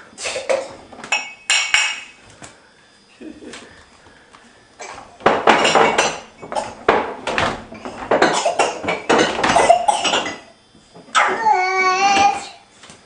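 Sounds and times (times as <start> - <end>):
dishes and silverware clattering: 1.1 - 2.1, 4.8 - 7.1, 7.8 - 10.5.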